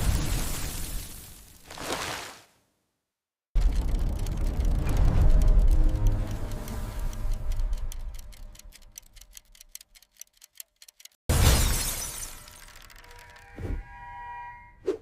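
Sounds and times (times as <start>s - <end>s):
clock ticking rapidly: 3.6s - 11.2s
loud shattering crash: 11.3s - 13.0s.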